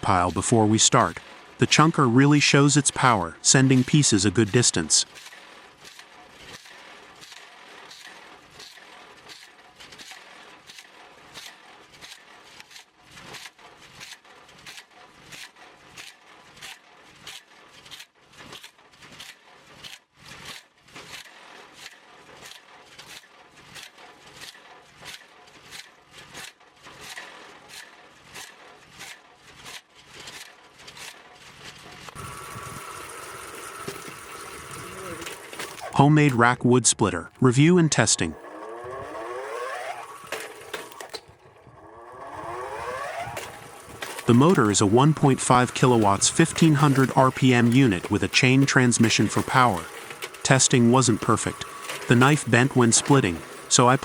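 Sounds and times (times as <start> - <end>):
machine hum: 32.1 - 36.4, 37.3 - 54.0.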